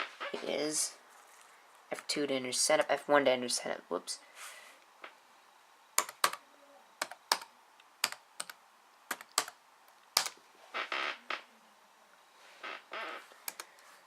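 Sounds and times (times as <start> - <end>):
soft hiss: 3.9 - 7.0
laptop keyboard keystrokes: 6.0 - 6.4, 7.0 - 10.4, 13.4 - 13.8.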